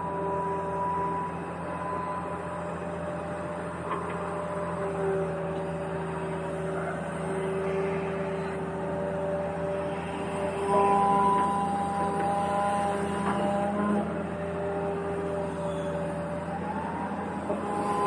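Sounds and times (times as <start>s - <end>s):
rough grinding noise: 16.1s - 18.0s.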